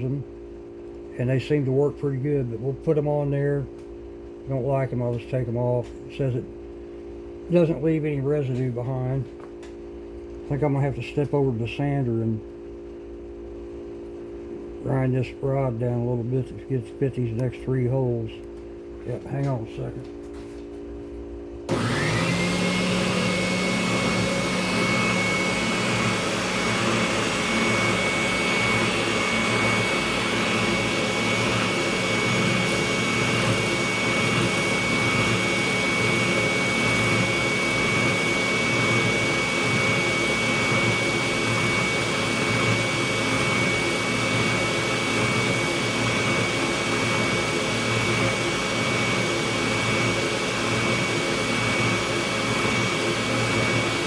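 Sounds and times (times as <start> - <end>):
electric sander grinding wood: 21.7 - 54.0.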